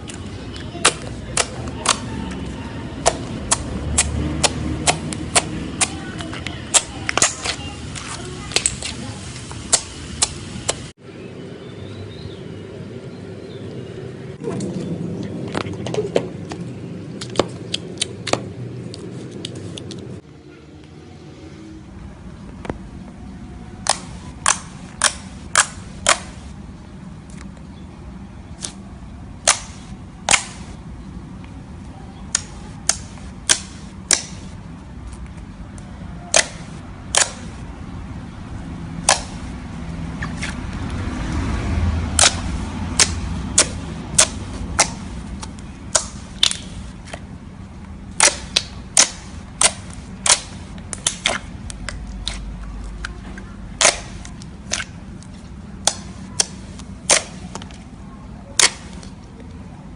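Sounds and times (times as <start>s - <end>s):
air popping in sharp clicks: 3.0s - 10.9s, 23.8s - 26.5s, 29.4s - 30.8s, 32.3s - 34.5s, 35.7s - 37.6s, 39.0s - 39.5s, 42.2s - 47.2s, 48.2s - 52.4s
slime being squeezed: 53.8s - 57.8s.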